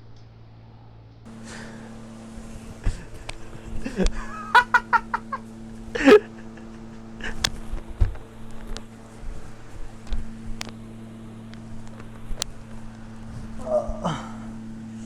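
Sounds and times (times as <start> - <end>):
steady low hum: 1.3 - 15.0
burst of laughter: 4.2 - 5.4, 6.0 - 7.4
vocal burst: 4.6 - 5.0, 6.0 - 6.3.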